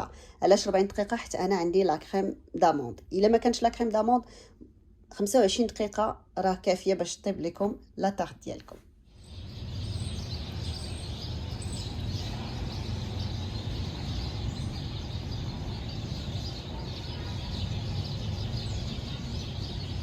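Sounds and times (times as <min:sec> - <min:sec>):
faint high bird chirps: 0:09.2 - 0:20.0.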